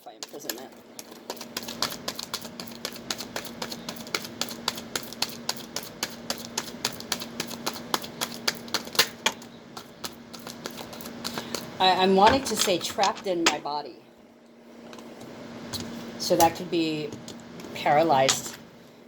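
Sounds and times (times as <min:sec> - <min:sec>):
steady low hum: 0:00.0 - 0:19.0
cards being shuffled: 0:00.2 - 0:11.7.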